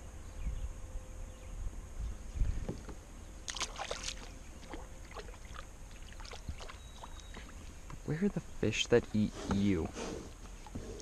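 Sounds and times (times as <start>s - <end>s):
wind on microphone: 0.0s - 3.0s
water splashes: 3.4s - 7.8s.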